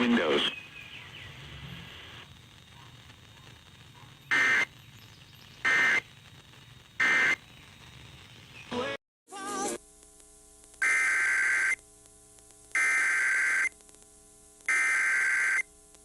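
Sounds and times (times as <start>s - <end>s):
faint radio hiss: 0.0s - 16.0s
digital data tone bursts: 4.3s - 4.8s, 5.6s - 6.1s, 7.0s - 7.4s, 10.8s - 11.8s, 12.8s - 13.7s, 14.7s - 15.7s.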